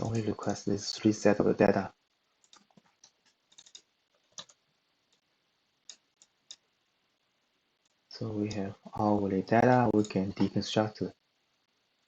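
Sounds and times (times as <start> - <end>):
keyboard and mouse clicks: 2.4 - 4.6.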